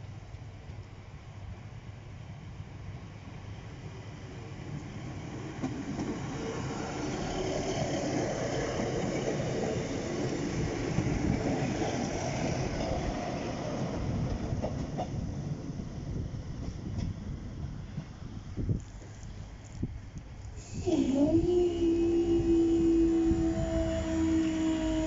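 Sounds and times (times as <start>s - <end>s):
train passing: 0.0s - 25.0s.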